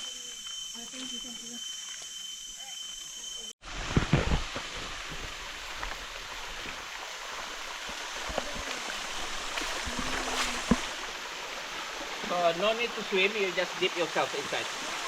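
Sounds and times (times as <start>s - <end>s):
water rushing over rocks: 3.7s - 15.0s.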